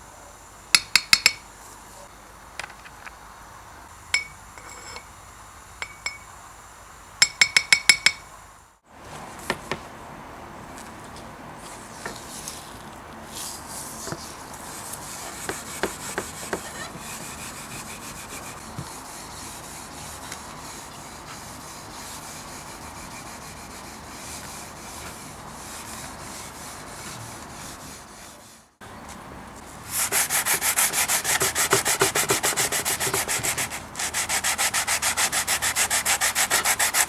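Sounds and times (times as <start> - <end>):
hand rubbing: 13.3 - 28.6, 29.6 - 37.0.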